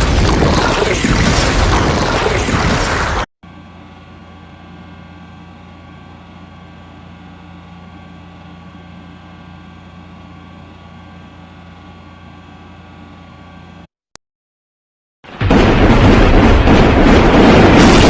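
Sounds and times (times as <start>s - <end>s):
steady low droning hum: 3.5s - 13.9s.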